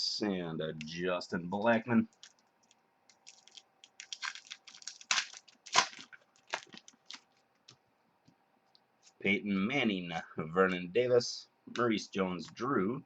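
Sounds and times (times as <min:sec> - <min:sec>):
cards and foil wrappers crinkling: 0:02.1 - 0:07.4.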